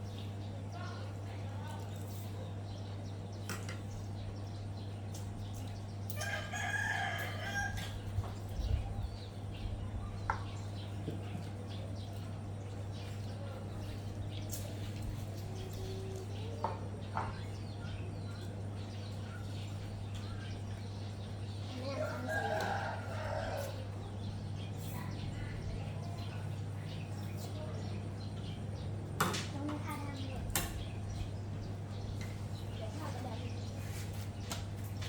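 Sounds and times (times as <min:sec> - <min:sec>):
rooster crowing: 0:06.2 - 0:08.0, 0:22.0 - 0:23.9.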